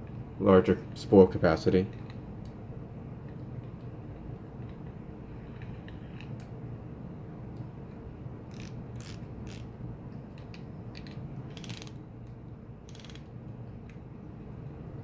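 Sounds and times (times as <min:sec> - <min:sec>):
fishing reel ratcheting clicks: 0:08.5 - 0:09.7, 0:11.6 - 0:12.0, 0:12.9 - 0:13.2.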